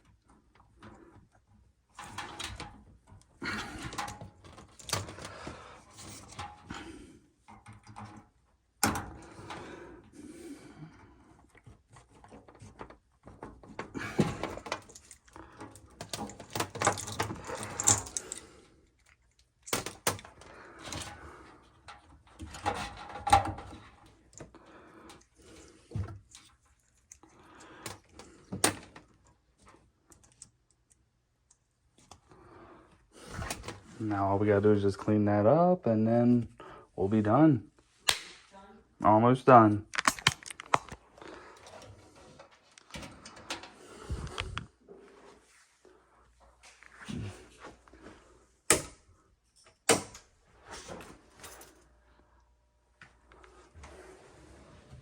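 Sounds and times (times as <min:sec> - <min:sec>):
tools clattering: 0:12.2 - 0:18.4, 0:39.9 - 0:41.0.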